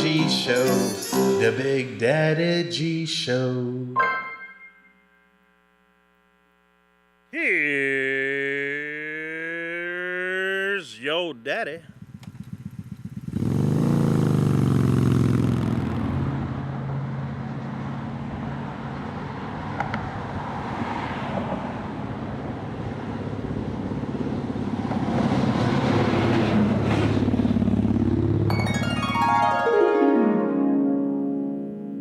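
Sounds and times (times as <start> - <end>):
vehicle engine revving: 11.8 - 18.0.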